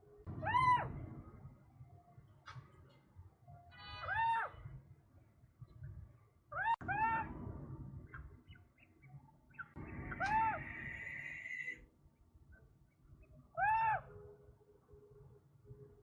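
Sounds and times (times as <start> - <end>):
wild birds calling: 8.1 - 11.8, 13.4 - 14.2.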